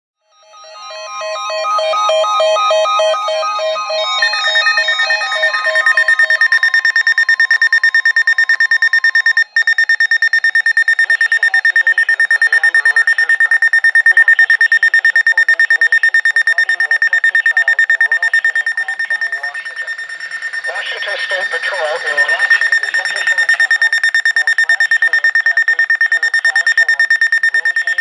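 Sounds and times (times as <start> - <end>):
high-pitched electronic alarm beeping: 0.2 - 28.0
steady broadcast warning tone: 0.4 - 28.0.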